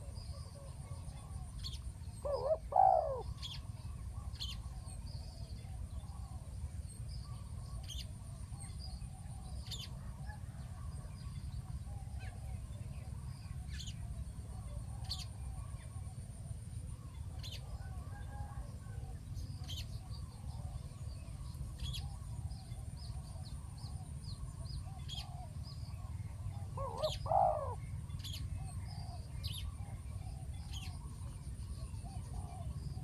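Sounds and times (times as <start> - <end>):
doves cooing: 2.2 - 3.4, 26.6 - 27.8.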